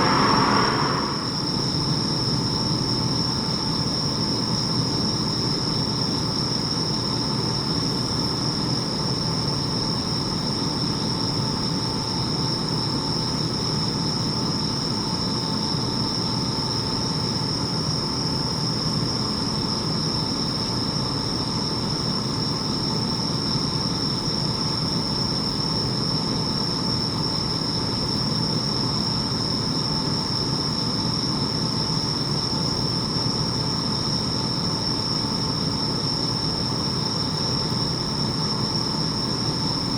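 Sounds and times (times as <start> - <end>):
low rumble: 0.0 - 1.9.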